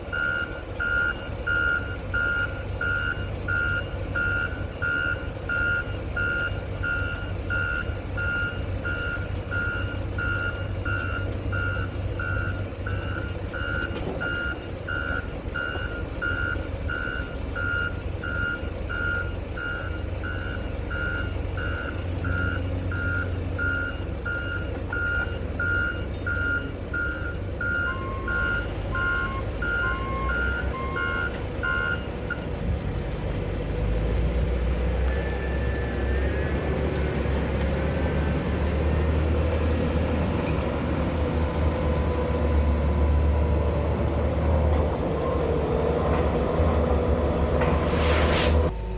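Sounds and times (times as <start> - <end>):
diesel engine running low: 0.0 - 48.9
backup alarm beeping: 48.4 - 48.9.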